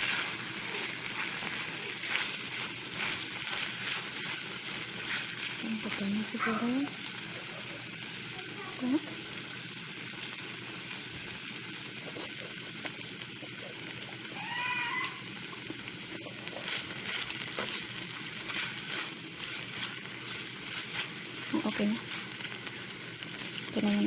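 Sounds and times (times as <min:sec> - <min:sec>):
stirring scrapes: 0:00.0 - 0:06.6, 0:16.2 - 0:23.7
vegetables sizzling in a frying pan: 0:00.0 - 0:24.0.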